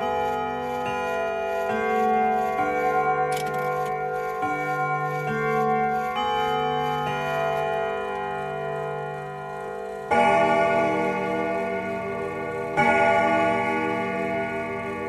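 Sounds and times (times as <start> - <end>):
grandfather clock chiming: 0.0 - 15.0.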